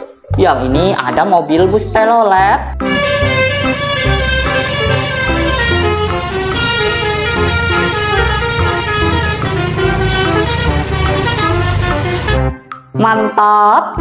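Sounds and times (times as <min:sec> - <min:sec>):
multi-tone bus horn tune: 0:02.8 - 0:12.7.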